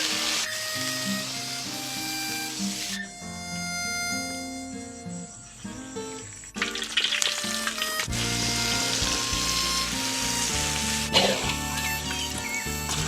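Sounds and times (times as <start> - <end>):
food sizzling in hot oil: 0.0 - 1.9, 6.6 - 11.6.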